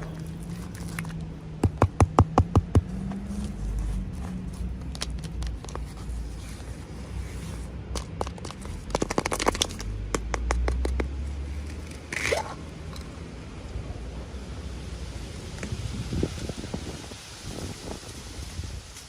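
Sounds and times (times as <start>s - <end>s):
packaging scrape: 0.0s - 1.2s, 2.9s - 9.9s
toy packaging clicks and taps: 4.8s - 6.0s, 7.9s - 11.8s.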